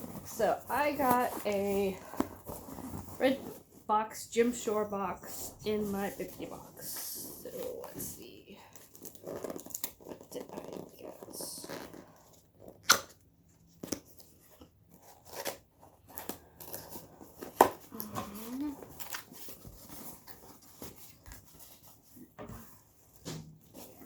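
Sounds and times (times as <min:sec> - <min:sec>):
cardboard tearing: 0:08.7 - 0:22.1.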